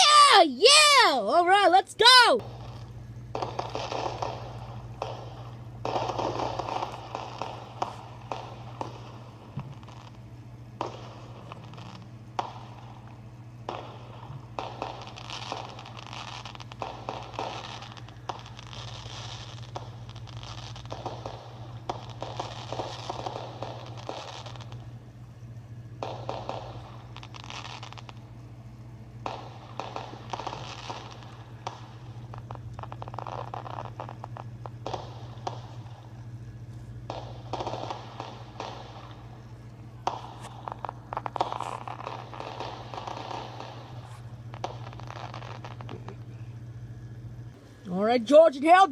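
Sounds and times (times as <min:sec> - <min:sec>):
low hum: 0:00.0 - 0:48.5
firework crackling: 0:00.0 - 0:48.9
sharp pops: 0:10.8 - 0:24.9, 0:29.2 - 0:36.1, 0:37.1 - 0:46.4.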